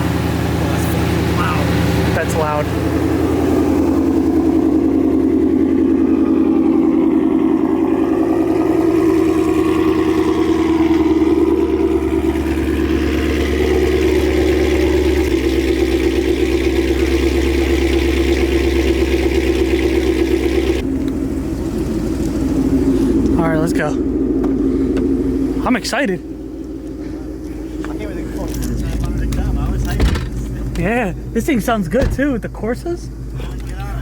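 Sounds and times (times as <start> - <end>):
loud car engine idling: 0.0 - 34.0.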